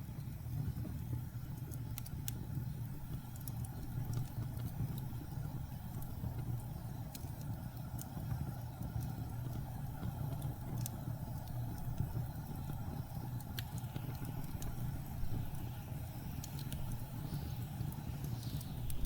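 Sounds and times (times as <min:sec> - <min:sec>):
wood fire crackling and popping: 0:00.0 - 0:19.0.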